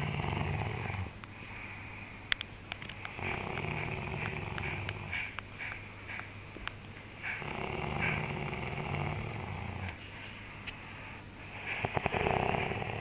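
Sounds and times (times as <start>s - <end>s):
man snoring: 0.0s - 1.1s, 3.2s - 5.1s, 7.4s - 9.9s, 11.8s - 13.0s.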